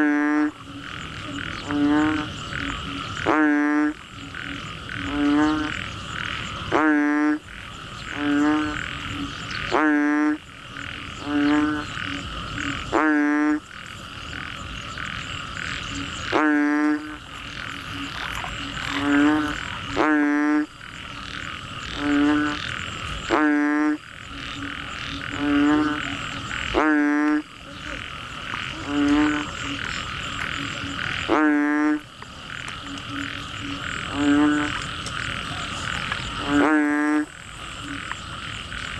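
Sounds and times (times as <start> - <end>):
frogs croaking: 0.0 - 38.9.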